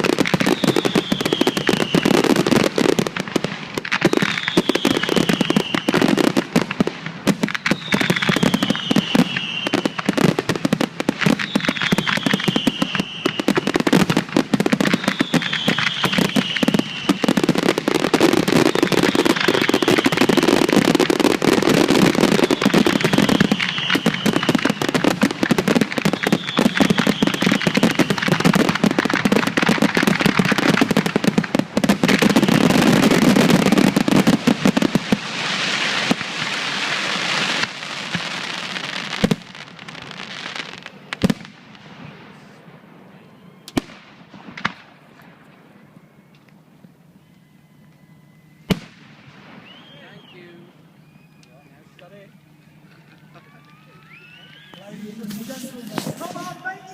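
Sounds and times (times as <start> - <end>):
fireworks crackling and popping: 0.0 - 56.9
falling whistle: 0.4 - 2.3, 4.0 - 6.0, 7.6 - 10.0, 11.4 - 13.7, 14.9 - 17.3, 18.6 - 20.5, 22.3 - 25.0, 26.1 - 28.2, 43.2 - 43.8, 47.1 - 48.8, 49.5 - 52.0, 53.1 - 55.8.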